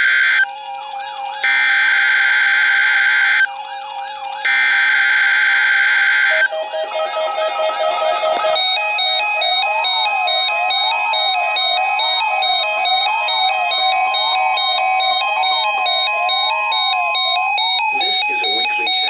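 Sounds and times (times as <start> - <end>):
weather radio alert warbling tone: 6.3 - 19.0.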